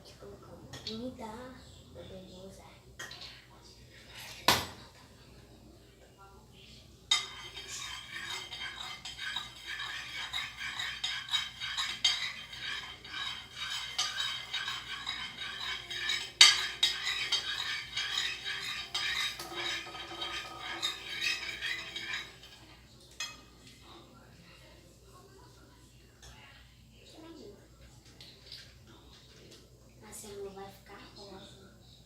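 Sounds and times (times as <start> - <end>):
spoon scraping a bowl: 7.1 - 23.5.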